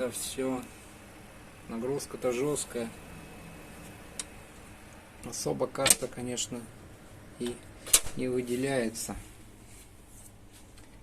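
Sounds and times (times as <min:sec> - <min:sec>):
computer fans whirring: 0:00.0 - 0:11.0.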